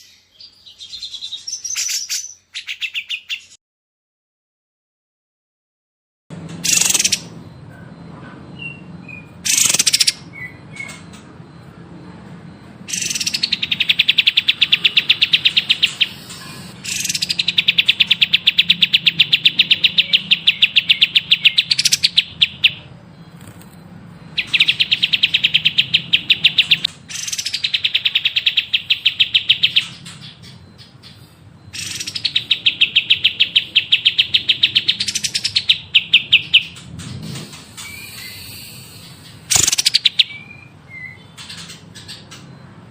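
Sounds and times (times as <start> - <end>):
songbird singing rapid trills: 12.9 - 23.5, 24.2 - 36.8.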